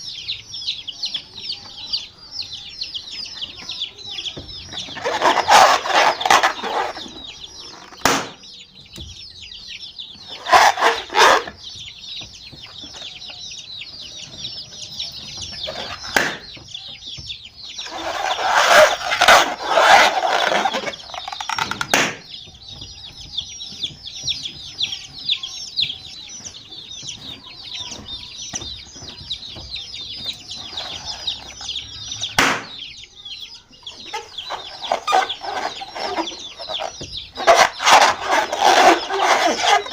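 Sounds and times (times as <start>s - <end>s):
baby chicks peeping: 0.0s - 39.9s
sharp knocks: 16.0s - 17.5s, 21.4s - 24.7s, 32.2s - 32.8s.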